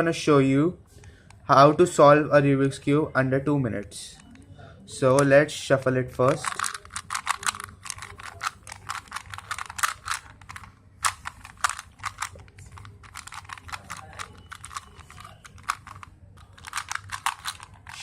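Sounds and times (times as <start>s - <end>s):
puzzle cube plastic clicks: 6.2s - 18.0s.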